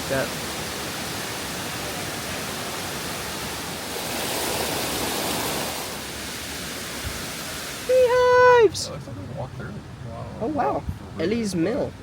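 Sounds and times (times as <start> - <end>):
waterfall rushing: 0.0 - 9.0.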